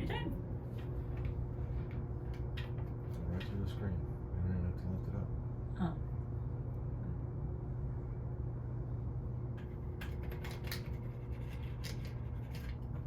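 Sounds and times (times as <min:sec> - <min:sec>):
steady low hum: 0:00.0 - 0:13.0
small sharp clicks and scratches: 0:09.9 - 0:13.0.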